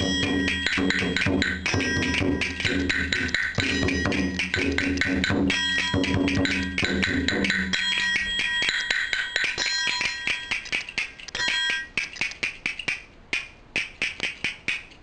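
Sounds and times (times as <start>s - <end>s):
ringing bell-like tones: 0.0s - 12.2s
sharp percussion taps: 0.0s - 15.0s.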